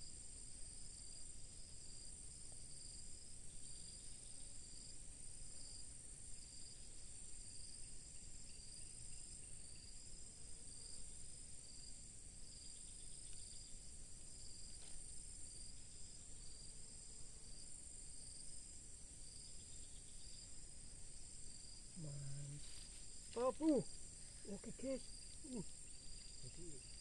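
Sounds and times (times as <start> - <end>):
pulsing insect trill: 0.0 - 27.0
insects shrilling: 21.6 - 27.0.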